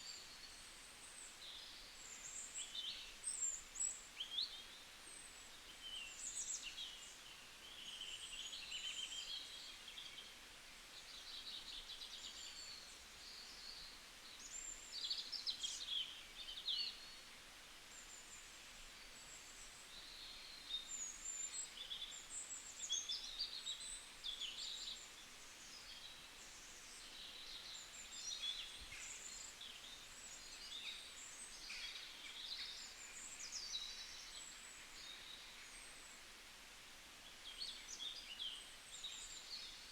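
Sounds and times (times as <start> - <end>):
faint background hiss: 0.0 - 39.9.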